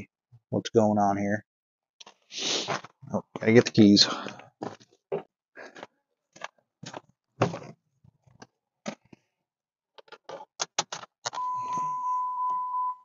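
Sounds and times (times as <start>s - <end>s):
car electronic warning chime: 11.4s - 13.0s.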